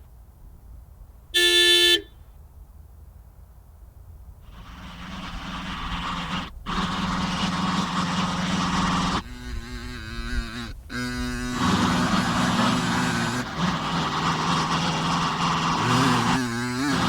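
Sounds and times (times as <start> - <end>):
road traffic: 0.0 - 17.0
horn tone: 1.4 - 2.2.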